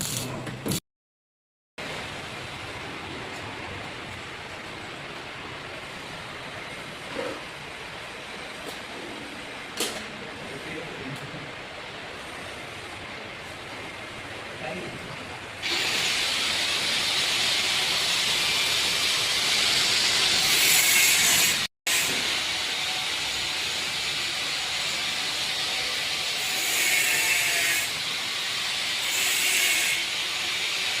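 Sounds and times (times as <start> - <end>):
welding arc hissing and crackling: 0.0 - 0.8, 15.6 - 31.0.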